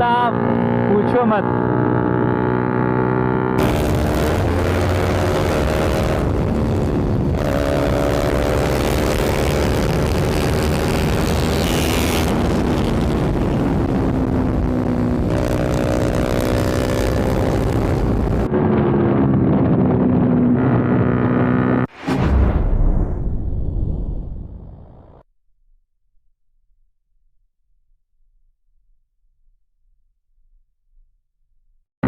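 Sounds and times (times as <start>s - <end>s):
motorcycle engines revving: 0.0s - 21.9s
wind rush on microphone: 3.6s - 21.8s.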